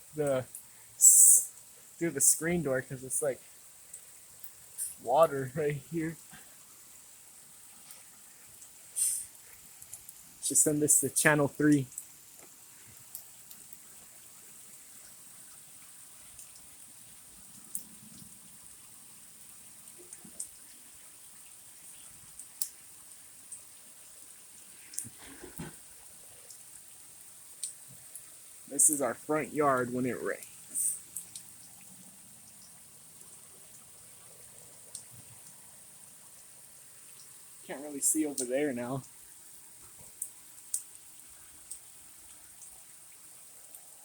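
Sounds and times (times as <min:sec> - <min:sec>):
heavy rain hiss: 0:00.0 - 0:44.0
sharp drip-like taps: 0:07.8 - 0:21.1, 0:21.8 - 0:23.8, 0:27.5 - 0:35.7, 0:36.3 - 0:42.9
small tick: 0:09.8 - 0:10.2, 0:11.8 - 0:13.8, 0:16.3 - 0:16.7, 0:17.5 - 0:18.3, 0:22.4 - 0:22.8, 0:27.6 - 0:28.3, 0:30.8 - 0:31.9, 0:34.9 - 0:35.6, 0:39.8 - 0:41.0, 0:41.7 - 0:41.9.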